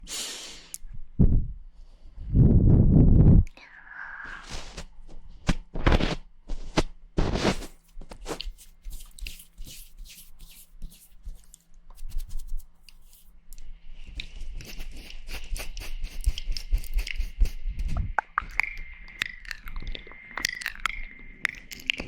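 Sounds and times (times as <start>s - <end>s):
wet mouth clicks and smacks: 12.9s - 22.0s.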